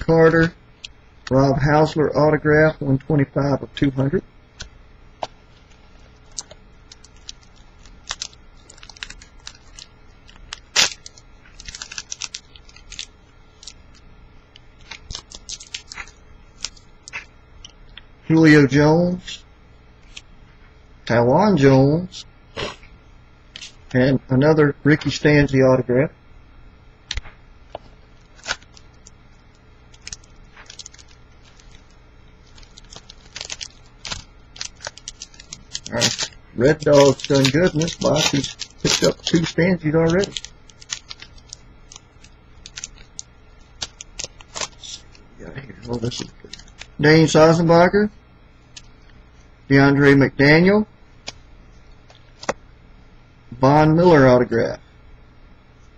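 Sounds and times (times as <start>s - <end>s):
foil wrapper crinkling and tearing: 5.2s - 14.0s, 14.6s - 17.3s, 28.2s - 45.2s, 45.8s - 47.6s
cards clicking and crackling: 6.2s - 14.0s, 14.6s - 17.3s, 27.1s - 45.2s, 45.8s - 47.0s, 52.1s - 52.6s.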